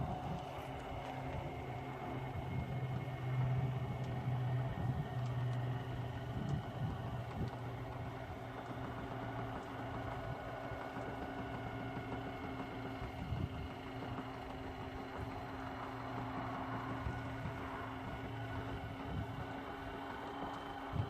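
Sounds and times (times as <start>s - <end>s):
motor humming: 0.0s - 21.0s.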